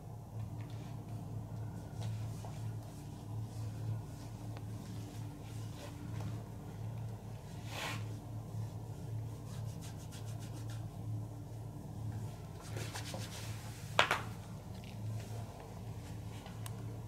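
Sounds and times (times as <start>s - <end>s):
steady low hum: 0.0s - 17.0s
hands rubbing skin: 9.3s - 11.0s.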